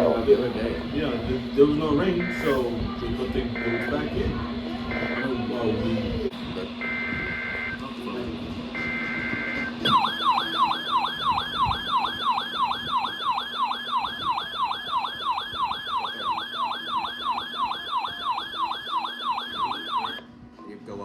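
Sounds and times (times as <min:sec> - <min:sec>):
siren-like attention tone: 0:02.0 - 0:02.7, 0:03.5 - 0:05.4, 0:06.8 - 0:07.9, 0:08.8 - 0:20.2
warbling data tones: 0:03.5 - 0:04.1, 0:04.8 - 0:05.3, 0:08.8 - 0:20.2.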